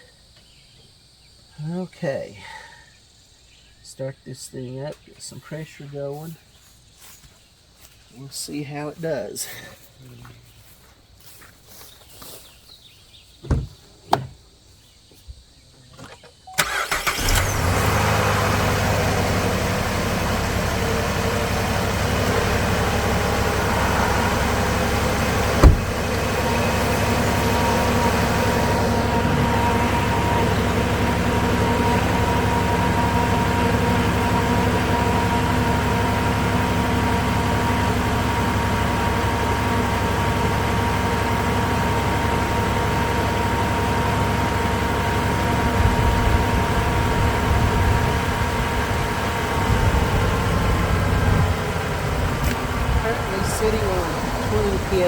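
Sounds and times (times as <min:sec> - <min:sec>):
short knocks: 0:13.4 - 0:14.4, 0:25.4 - 0:26.3
car engine starting and idling: 0:16.0 - 0:55.0.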